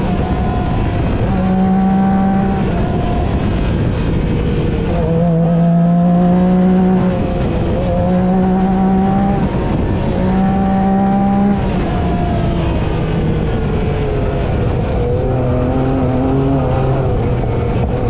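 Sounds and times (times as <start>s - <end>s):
vehicle engine driving: 0.0s - 18.0s.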